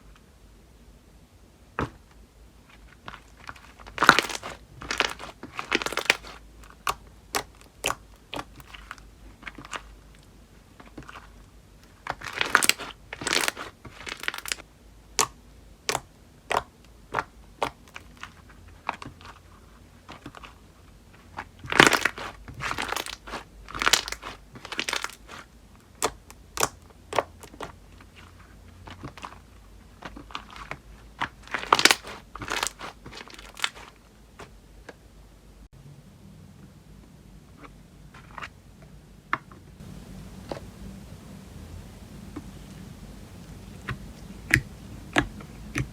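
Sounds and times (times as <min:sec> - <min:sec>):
slime clicking and popping: 0:03.9 - 0:08.9, 0:15.2 - 0:18.2, 0:21.7 - 0:27.7, 0:43.8 - 0:45.9.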